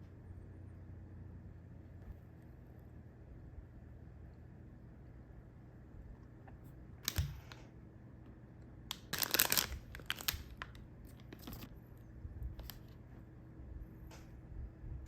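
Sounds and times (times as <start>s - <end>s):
wrapper crinkling and tearing: 8.9s - 11.7s.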